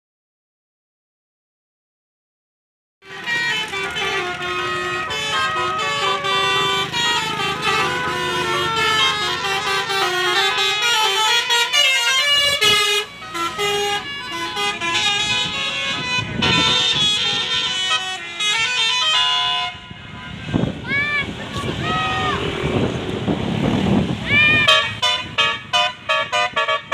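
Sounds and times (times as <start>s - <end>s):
bus musical horn melody: 3.0s - 20.8s, 24.3s - 26.9s.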